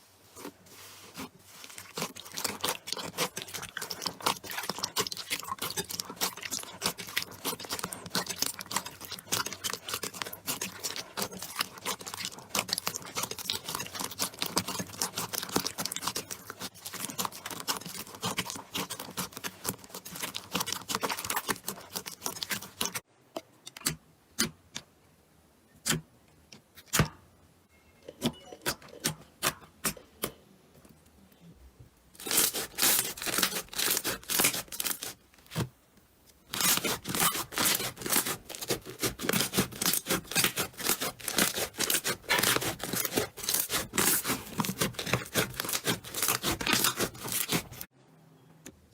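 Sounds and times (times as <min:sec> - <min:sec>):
slime crackling and popping: 0:01.2 - 0:23.0, 0:32.2 - 0:35.6, 0:36.5 - 0:47.9.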